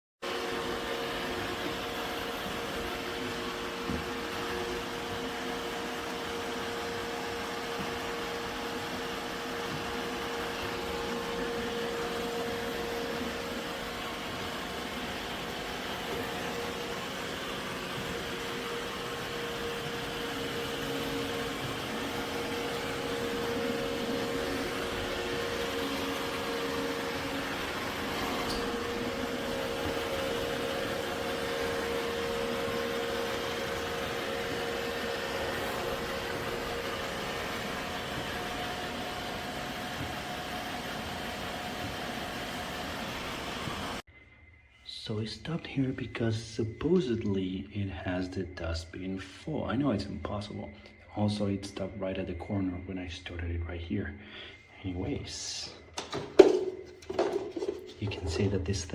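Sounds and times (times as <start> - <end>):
robot vacuum motor whir: 0.3 - 44.0.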